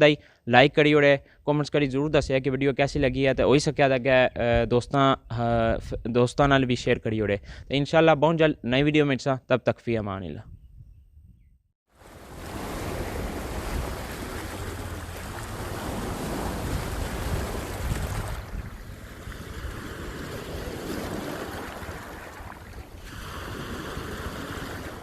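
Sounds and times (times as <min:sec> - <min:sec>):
wind buffeting microphone: 0:10.4 - 0:11.6, 0:12.4 - 0:25.0.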